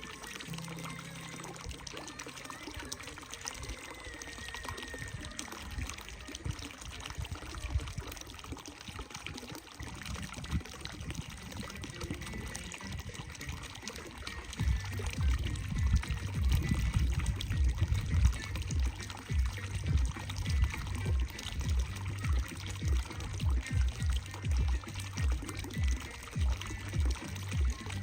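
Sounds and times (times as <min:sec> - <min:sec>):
running water: 0:00.0 - 0:28.0.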